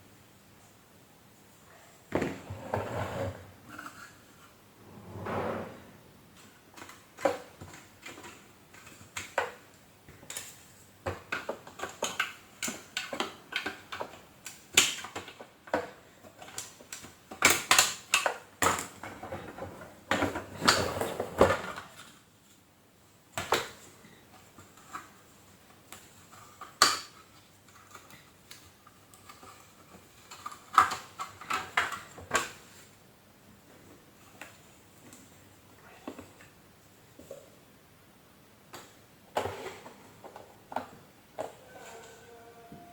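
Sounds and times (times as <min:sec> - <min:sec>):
plastic parts clicking and knocking: 0:06.8 - 0:20.4.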